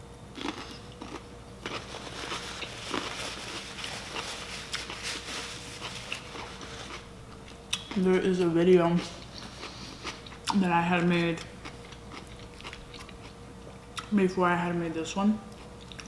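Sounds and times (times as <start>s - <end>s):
food handling clicks and crackles: 0.4s - 13.4s
chewing: 0.4s - 14.1s, 15.5s - 16.0s.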